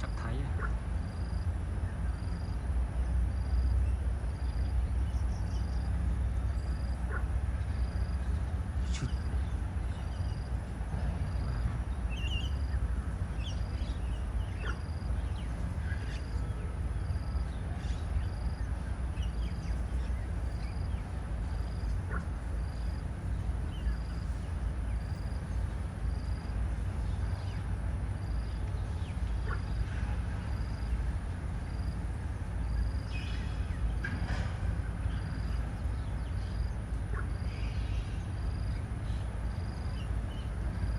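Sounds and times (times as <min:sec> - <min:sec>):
bird chirps: 0:08.0 - 0:10.5, 0:11.3 - 0:27.7, 0:28.4 - 0:31.0.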